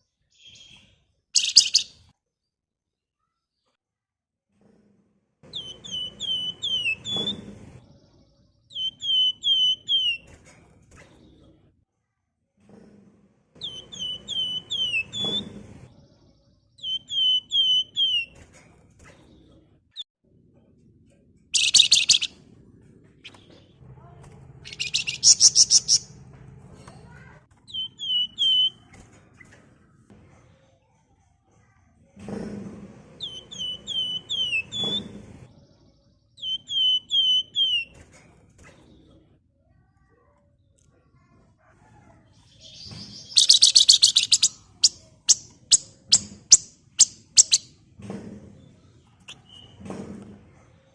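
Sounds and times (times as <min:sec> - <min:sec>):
bird whistling calls: 0:01.4 - 0:01.9, 0:21.6 - 0:22.3, 0:24.6 - 0:26.1, 0:27.7 - 0:28.8, 0:36.4 - 0:37.9, 0:43.1 - 0:47.7.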